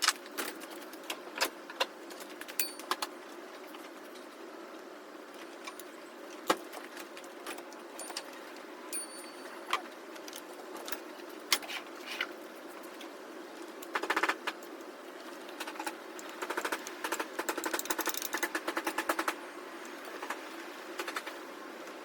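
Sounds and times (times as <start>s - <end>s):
metal tools clinking: 2.6s - 3.0s, 8.0s - 9.8s.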